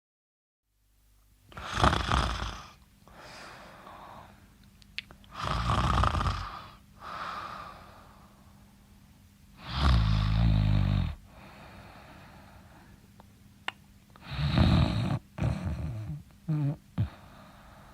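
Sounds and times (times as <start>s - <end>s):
person snoring: 1.5s - 4.3s, 5.3s - 8.2s, 9.6s - 12.7s, 14.2s - 17.9s
quiet breath: 2.5s - 4.6s, 6.4s - 9.0s, 11.2s - 13.1s, 17.0s - 17.9s.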